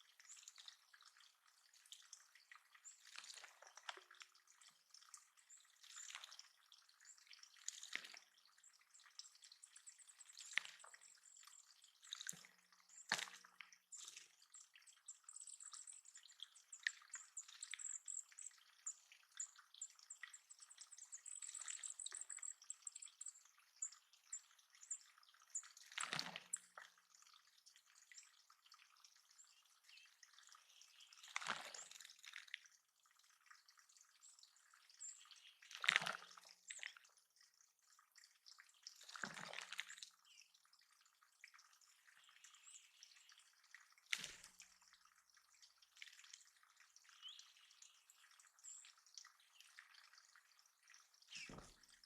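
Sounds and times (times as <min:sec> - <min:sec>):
water drops splashing into pond: 0:00.0 - 0:52.0.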